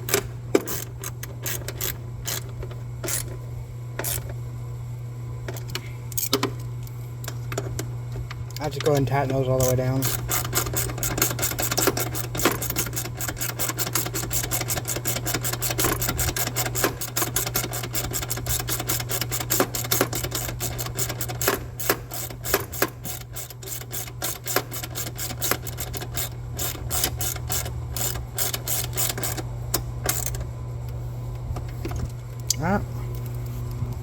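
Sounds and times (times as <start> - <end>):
ratchet wrench clicking: 0.0 - 3.3, 4.0 - 4.3, 9.6 - 30.4
steady low hum: 0.0 - 34.0.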